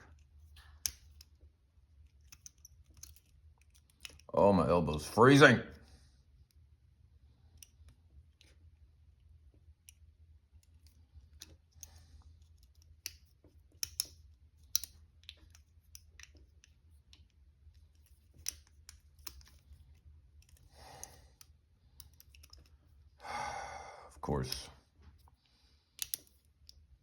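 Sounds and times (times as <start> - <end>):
low steady hum: 0.0 - 27.0
lock picks clicking in keyhole: 2.0 - 4.3, 10.6 - 17.3, 17.9 - 19.7, 20.4 - 22.8, 26.0 - 26.8.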